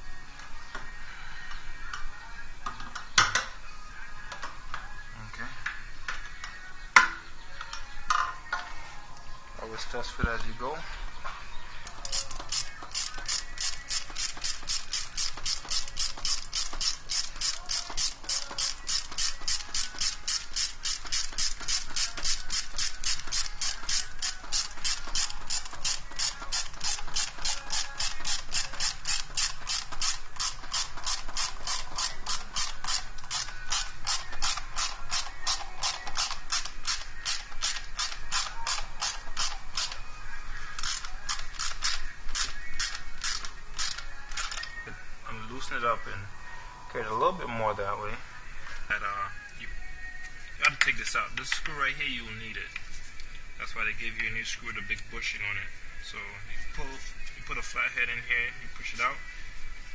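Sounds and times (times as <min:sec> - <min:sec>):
hand ratchet clicking: 0:12.0 - 0:40.0, 0:40.8 - 0:44.7.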